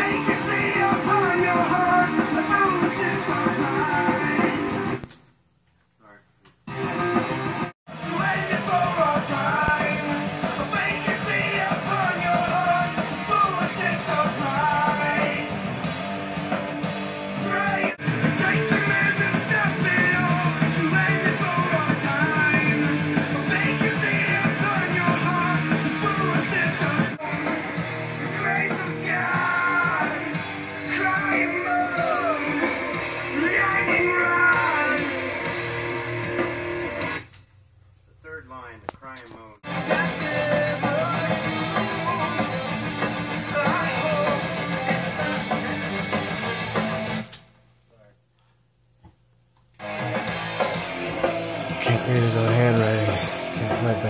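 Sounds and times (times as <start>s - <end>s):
person singing: 0.0s - 4.8s, 7.9s - 15.6s, 17.4s - 35.4s, 39.7s - 46.2s, 51.8s - 54.0s
heavy metal rock music: 0.0s - 5.0s, 6.7s - 37.2s, 39.6s - 47.4s, 49.8s - 54.0s.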